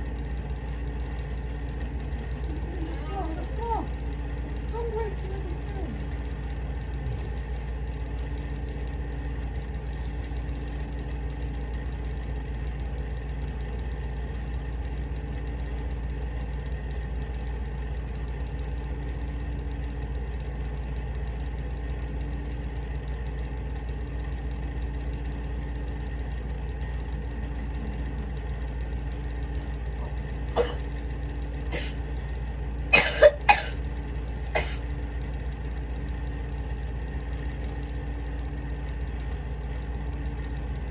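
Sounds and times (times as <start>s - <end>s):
low hum: 0.0s - 40.9s
person coughing: 30.6s - 30.8s, 31.7s - 32.0s, 33.0s - 33.8s, 34.6s - 34.8s.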